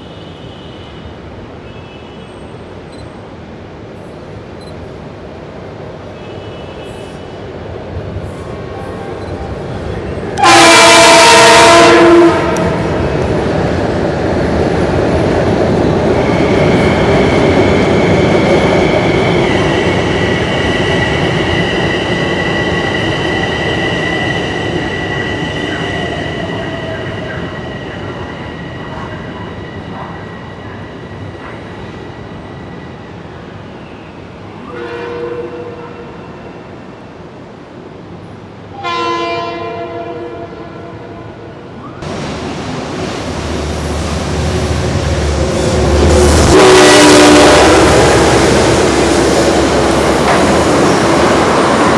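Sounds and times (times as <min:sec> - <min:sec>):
train rumbling past: 0:02.4 - 0:51.9
train horn blast: 0:10.4 - 0:13.2, 0:34.7 - 0:36.6, 0:38.7 - 0:41.6, 0:45.1 - 0:49.2.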